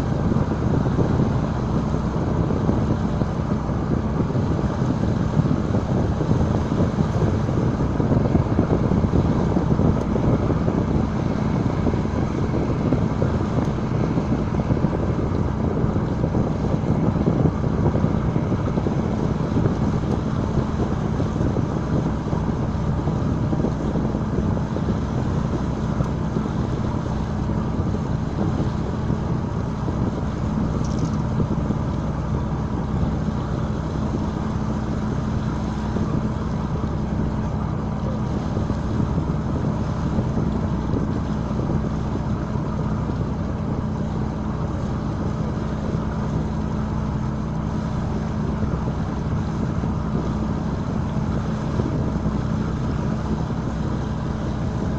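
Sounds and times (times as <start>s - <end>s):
boat engine running: 0.0s - 54.9s
wind noise on microphone: 0.0s - 54.9s.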